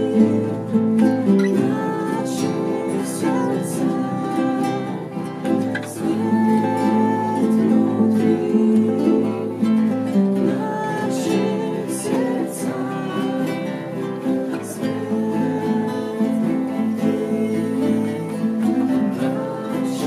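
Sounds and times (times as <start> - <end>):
strummed acoustic guitar: 0.0 - 20.0.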